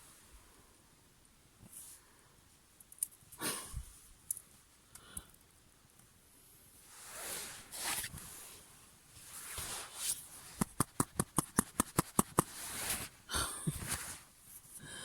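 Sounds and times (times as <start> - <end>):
soft rustling: 6.8 - 14.8.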